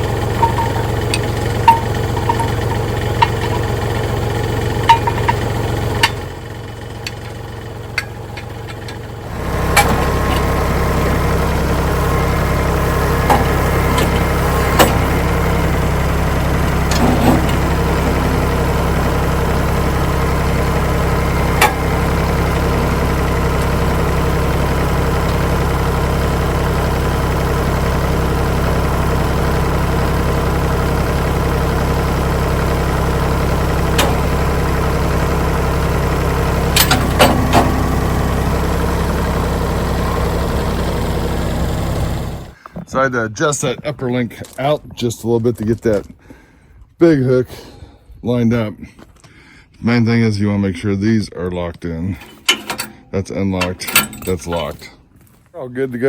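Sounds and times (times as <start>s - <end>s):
metallic clanks: 0.0s - 26.9s, 32.1s - 42.8s, 52.1s - 55.1s
tractor diesel engine idling: 0.0s - 46.7s, 49.0s - 56.0s.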